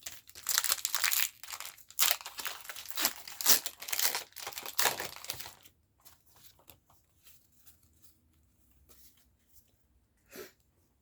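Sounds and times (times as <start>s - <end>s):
foil wrapper crinkling and tearing: 0.0s - 5.7s.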